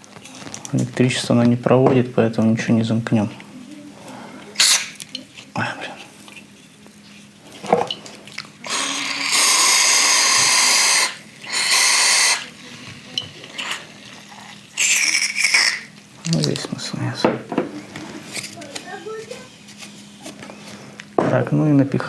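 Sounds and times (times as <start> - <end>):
aerosol spray hissing: 8.7 - 12.5.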